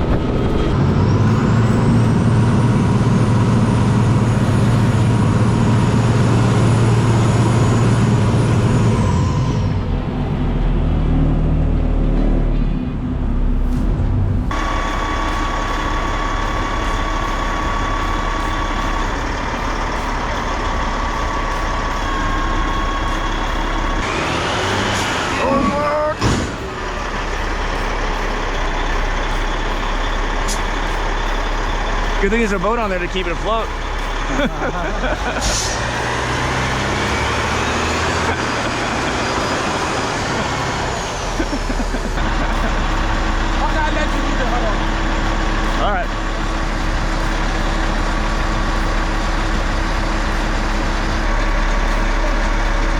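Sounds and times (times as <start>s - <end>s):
dense wash of noise: 0.0s - 6.9s
heavy engine running: 0.0s - 52.9s
steady high whine: 13.4s - 25.5s, 26.2s - 52.9s
broad noise: 14.5s - 52.9s.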